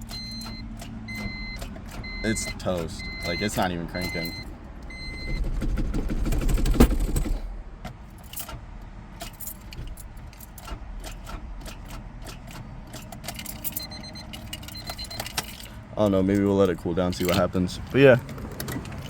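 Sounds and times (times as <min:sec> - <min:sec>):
electronic warning chime: 0:00.2 - 0:05.4
keys jangling: 0:08.2 - 0:08.6, 0:09.2 - 0:15.8, 0:16.6 - 0:19.0
small clicks and rattles: 0:09.2 - 0:19.0.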